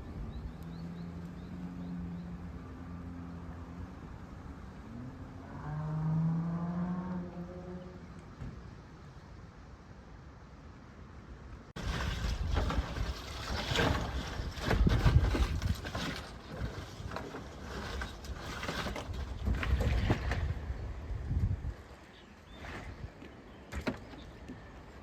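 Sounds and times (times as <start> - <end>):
knocks and rustling: 11.8 - 20.6
wind buffeting microphone: 11.8 - 23.2.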